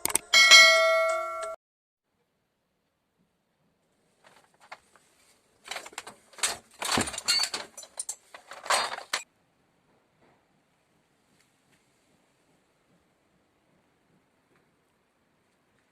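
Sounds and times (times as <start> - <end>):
hard objects knocking and rattling: 5.7 - 9.2.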